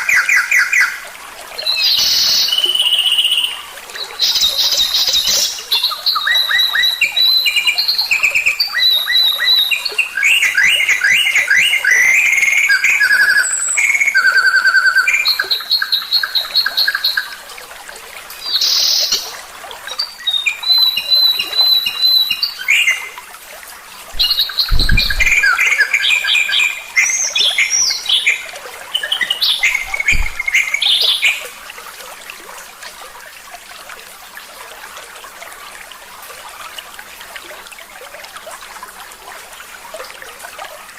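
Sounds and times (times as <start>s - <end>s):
low thumps: 24.2s - 25.5s, 29.8s - 30.6s
songbird trilling and whistling: 24.2s - 28.4s, 29.0s - 31.4s.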